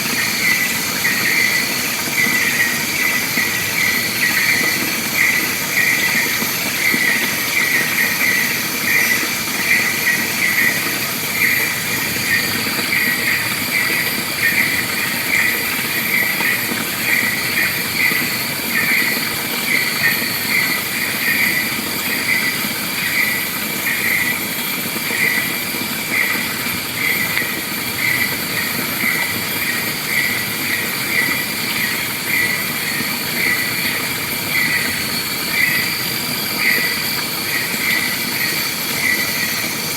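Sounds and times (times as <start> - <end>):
high-pitched insect drone: 0.0 - 39.9.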